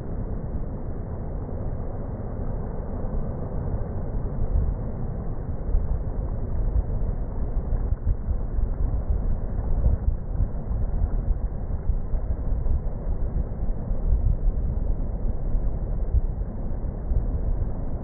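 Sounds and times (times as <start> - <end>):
wind buffeting microphone: 5.6 - 18.0.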